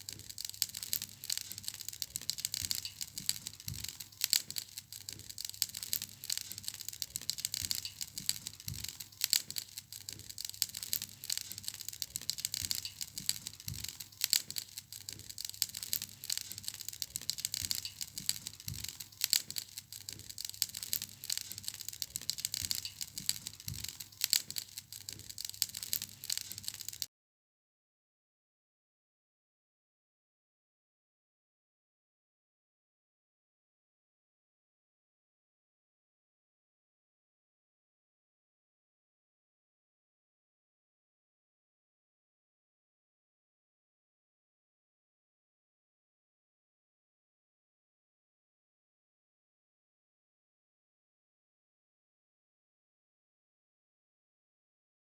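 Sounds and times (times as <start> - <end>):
wood fire crackling: 0.0 - 27.1.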